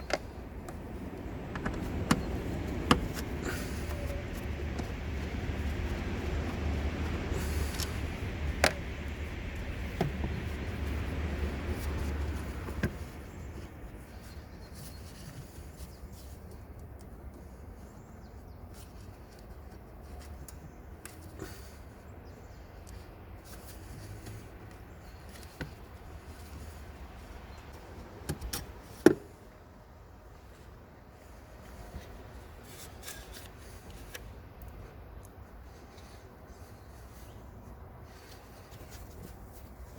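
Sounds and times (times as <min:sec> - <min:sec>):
diesel engine idling: 0:00.6 - 0:13.6.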